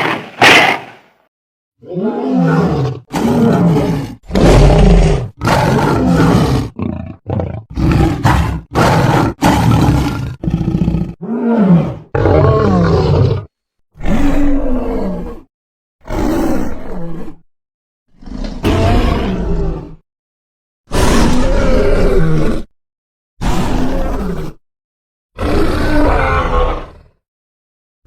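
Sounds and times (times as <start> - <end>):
cartoon monster roars and growls: 1.8 - 15.5, 18.2 - 20.0, 20.9 - 22.7, 23.4 - 24.6, 25.4 - 27.2.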